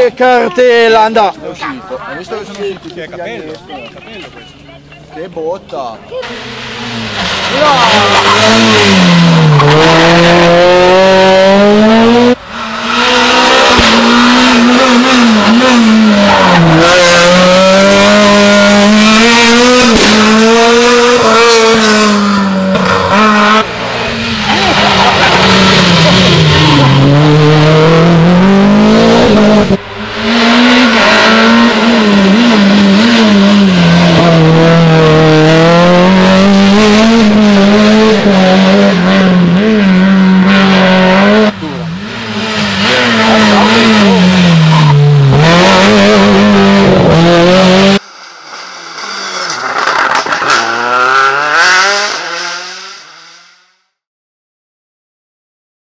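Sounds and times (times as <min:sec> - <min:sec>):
rally car engines revving: 0:00.0 - 0:53.8.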